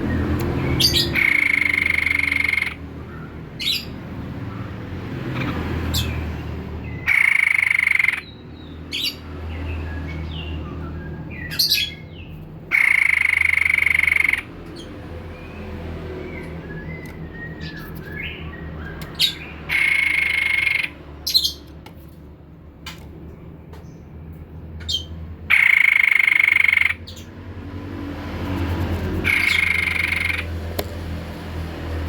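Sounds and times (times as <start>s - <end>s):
bird calling: 0.4s - 4.0s, 7.0s - 8.4s, 12.7s - 14.9s, 16.3s - 21.7s, 24.9s - 27.3s, 29.0s - 30.6s.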